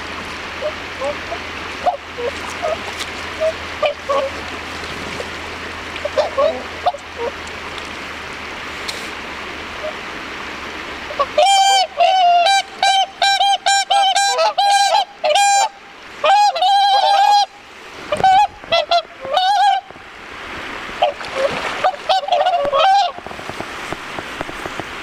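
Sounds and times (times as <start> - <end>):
swans honking: 0.0 - 8.2, 11.0 - 20.0, 20.9 - 23.5.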